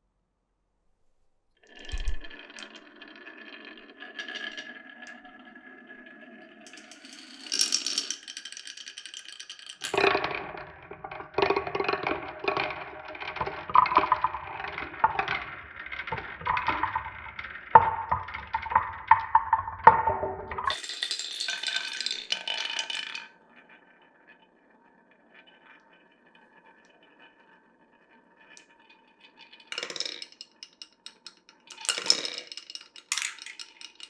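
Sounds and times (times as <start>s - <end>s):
marbles rolling on wooden track: 1.6s - 24.4s, 28.4s - 34.0s
marbles clicking and clacking: 1.7s - 5.4s, 6.7s - 23.4s, 29.4s - 34.0s.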